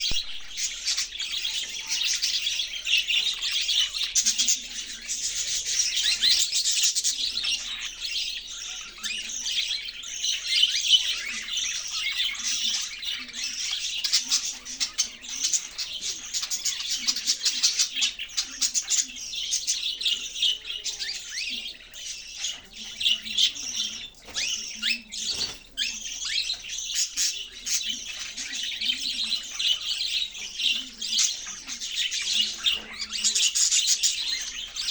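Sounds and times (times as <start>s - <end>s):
budgies chirping and warbling: 0.0s - 34.9s.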